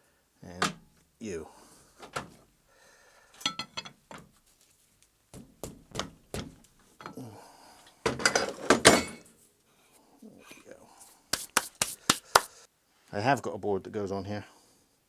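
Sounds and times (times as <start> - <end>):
metal tools clinking and knocking: 3.4 - 4.3, 7.0 - 7.2, 8.1 - 9.3.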